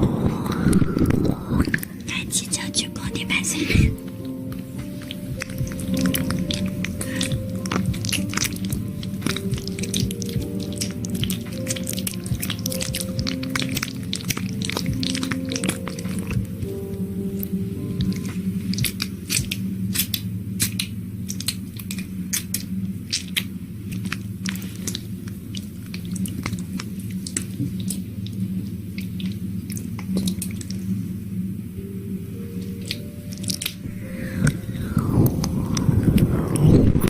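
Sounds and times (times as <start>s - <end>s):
steady low drone: 0.0s - 37.0s
wet sticky clicks and squishes: 4.5s - 16.5s, 18.0s - 30.8s, 32.8s - 33.8s.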